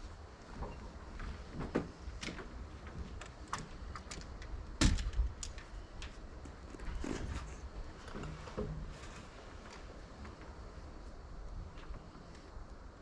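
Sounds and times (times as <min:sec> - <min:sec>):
knocks on wooden rafters: 0:01.4 - 0:04.2, 0:04.8 - 0:05.5.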